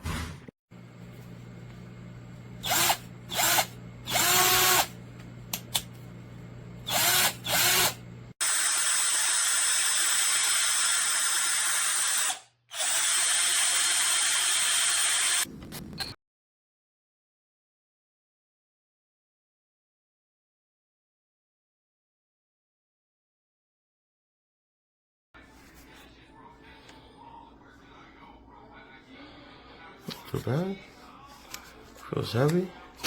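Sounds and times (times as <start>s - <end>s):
cordless drill motor whining: 2.6s - 4.9s, 6.9s - 15.5s.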